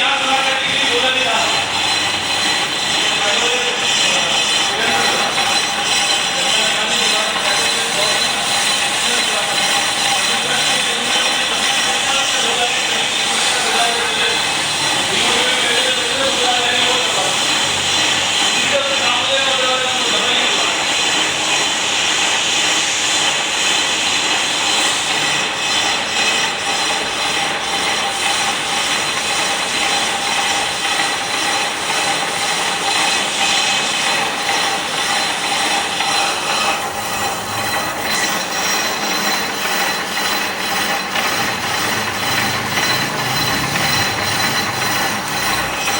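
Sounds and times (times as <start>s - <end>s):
high whining tones: 0.0s - 18.0s, 31.1s - 45.9s
lathe scraping cut: 0.0s - 45.9s.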